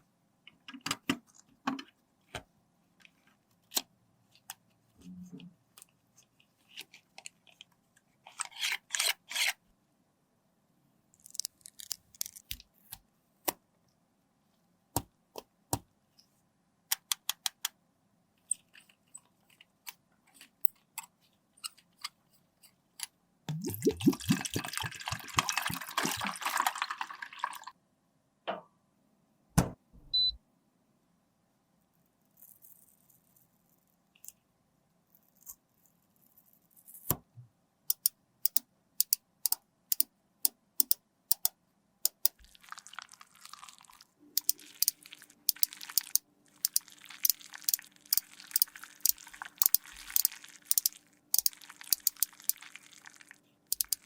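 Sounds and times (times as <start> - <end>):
small clicks and taps: 37.9 - 42.4, 53.7 - 54.0.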